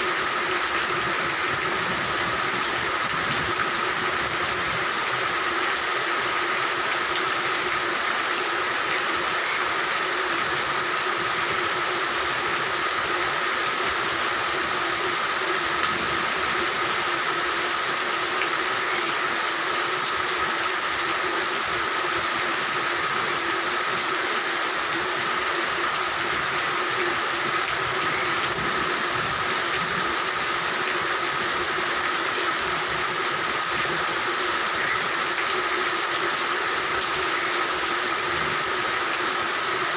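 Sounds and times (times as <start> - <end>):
steady rain: 0.0 - 39.9
frogs calling: 8.4 - 30.6, 33.4 - 39.3.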